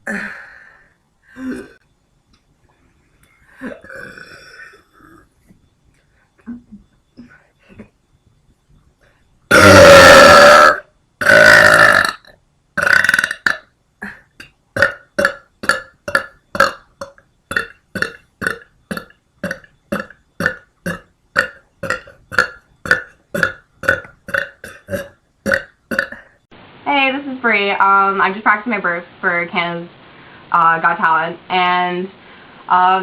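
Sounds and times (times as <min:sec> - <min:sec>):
person burping loudly: 0:01.4 - 0:01.8, 0:03.6 - 0:05.3, 0:09.5 - 0:26.4.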